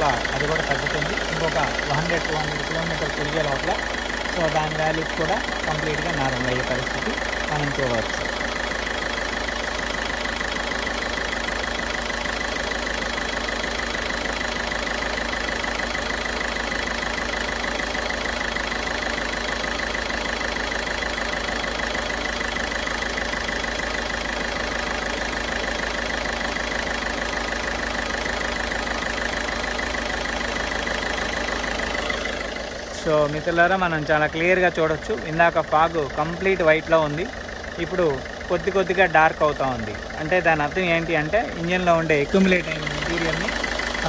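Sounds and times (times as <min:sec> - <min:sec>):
diesel engine idling: 0:00.0 - 0:44.0.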